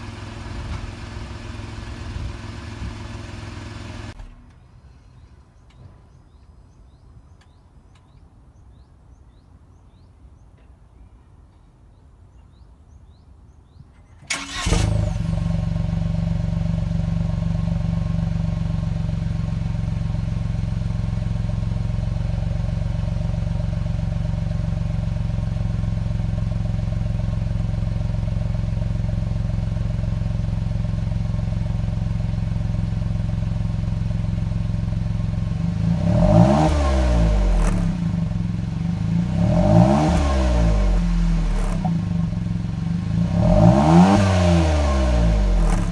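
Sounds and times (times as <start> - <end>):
car engine starting and idling: 0.0 - 4.8, 14.0 - 45.9
engine throttle blips: 14.2 - 16.9, 35.2 - 45.9.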